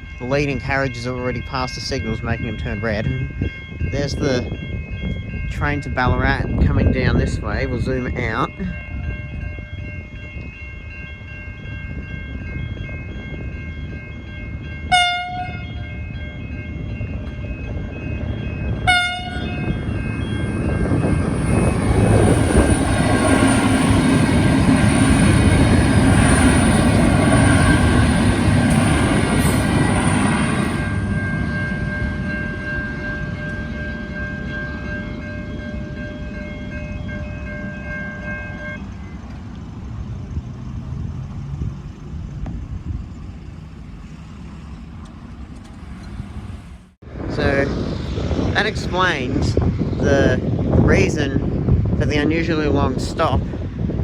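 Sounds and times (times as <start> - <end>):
train running past with whine: 0.0 - 54.0
train horn blasts: 14.9 - 15.8, 18.8 - 19.6.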